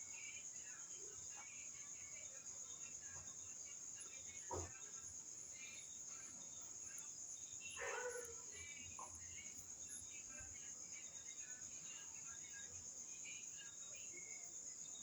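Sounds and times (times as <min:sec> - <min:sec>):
crickets chirping: 0:00.0 - 0:15.0
soft knock: 0:04.5 - 0:04.8.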